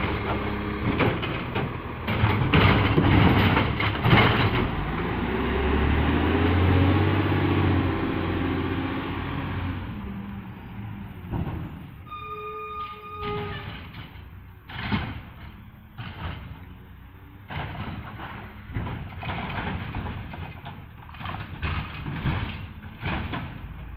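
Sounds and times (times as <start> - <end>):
garbage truck engine running: 0.0 - 12.1
brief pitched tone: 12.1 - 13.8.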